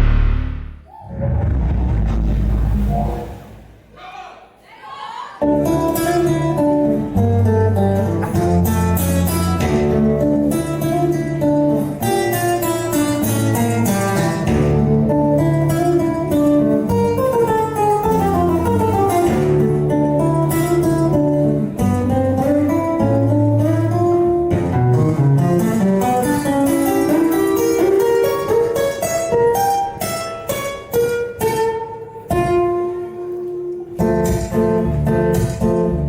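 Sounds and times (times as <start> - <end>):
sustained bass notes: 0.0 - 3.8, 5.5 - 11.5
fast plucked guitar picking: 5.5 - 36.0.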